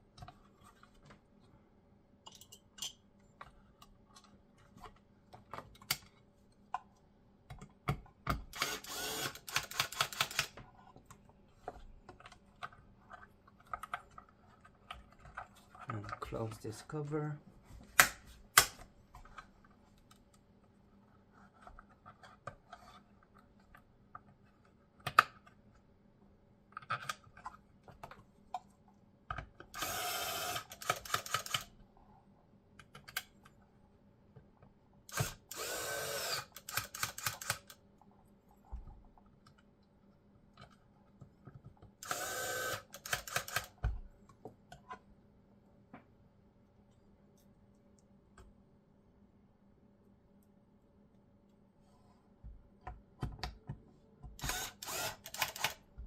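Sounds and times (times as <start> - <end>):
electric screwdriver whirring: 8.5 - 10.5, 29.8 - 31.6, 35.1 - 37.7, 42.0 - 43.7, 54.4 - 55.8
screwdriver clutch clicks: 8.6 - 10.5, 29.8 - 31.6, 35.1 - 37.8, 42.0 - 43.8, 54.4 - 55.8.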